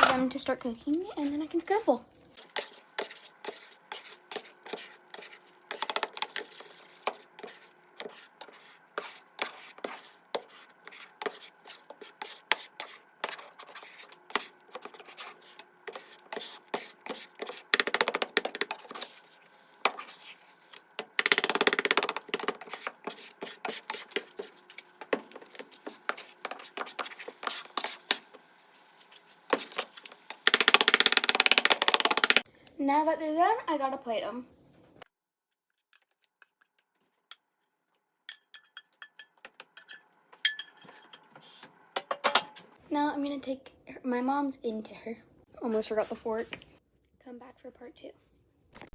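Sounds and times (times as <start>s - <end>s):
spatula scraping a frying pan: 2.3s - 32.5s, 38.3s - 42.5s.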